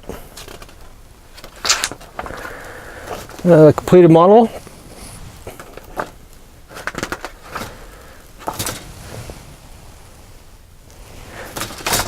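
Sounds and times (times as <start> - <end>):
plastic parts rustling and clicking: 0.0 - 3.5, 5.4 - 7.8, 8.4 - 8.9, 11.4 - 12.0.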